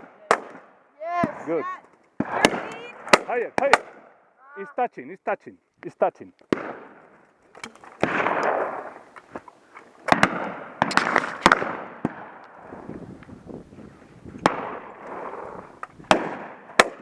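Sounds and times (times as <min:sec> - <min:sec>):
shotgun shots with echo: 0:06.5 - 0:07.0, 0:08.0 - 0:08.9, 0:10.1 - 0:12.4, 0:14.4 - 0:17.0
faint distant gunshots: 0:06.5 - 0:07.1, 0:08.0 - 0:09.0, 0:10.1 - 0:12.4, 0:14.4 - 0:17.0.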